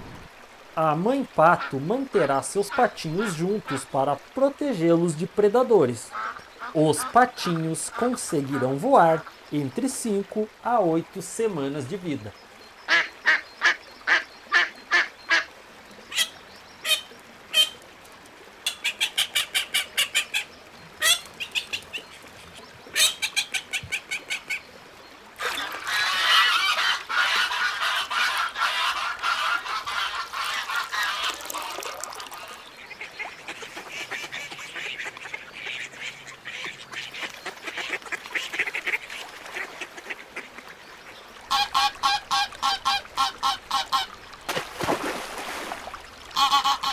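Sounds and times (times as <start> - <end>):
ducks quacking: 1.4 - 4.0, 6.1 - 9.4, 12.9 - 15.5, 18.6 - 24.6, 25.4 - 44.2, 46.3 - 46.9.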